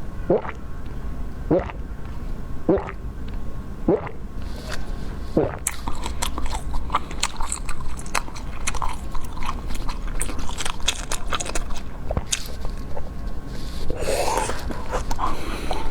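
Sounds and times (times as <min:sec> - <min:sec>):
person chewing cake: 0:01.5 - 0:15.9
wet mouth clicks and smacks: 0:05.6 - 0:12.8.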